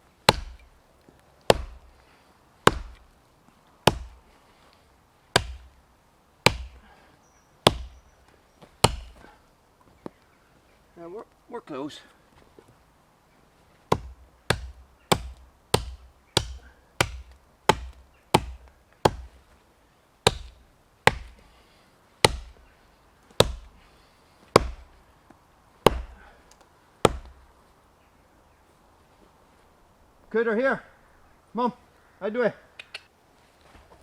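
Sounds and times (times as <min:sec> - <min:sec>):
axe chopping into tree trunk: 0:00.3 - 0:00.7, 0:01.5 - 0:01.9, 0:02.6 - 0:03.1, 0:03.8 - 0:04.2, 0:05.3 - 0:05.8, 0:06.4 - 0:06.9, 0:07.6 - 0:08.0, 0:08.8 - 0:09.4, 0:13.9 - 0:19.4, 0:20.2 - 0:21.4, 0:22.2 - 0:22.6, 0:23.3 - 0:23.8, 0:24.5 - 0:25.0, 0:25.8 - 0:26.4, 0:27.0 - 0:27.4.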